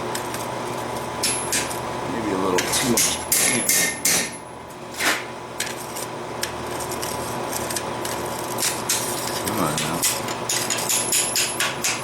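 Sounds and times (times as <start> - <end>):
hammer striking steel: 3.0 - 4.4, 10.0 - 12.0.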